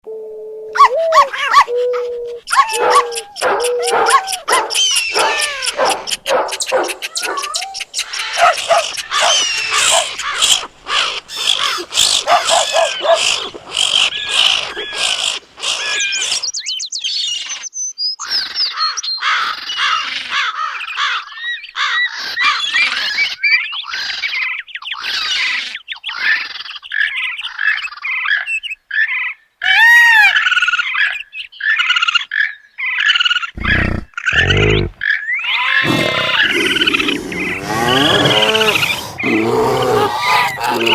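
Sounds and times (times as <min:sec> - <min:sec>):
croaking: 0:00.8 - 0:06.3, 0:33.6 - 0:35.0, 0:35.6 - 0:40.9
bird chirps and squawks: 0:00.8 - 0:16.5, 0:33.6 - 0:40.9.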